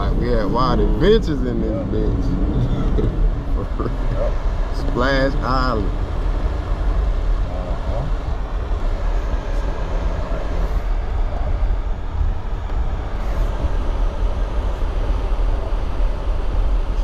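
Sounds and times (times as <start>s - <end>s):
engine and tyres rumbling: 0.0s - 17.0s.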